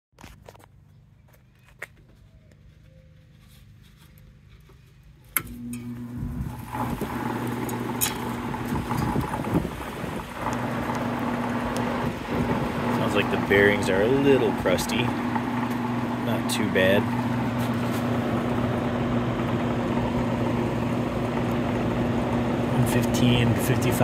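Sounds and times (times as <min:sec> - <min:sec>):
air conditioner fan humming: 0:04.1 - 0:24.0.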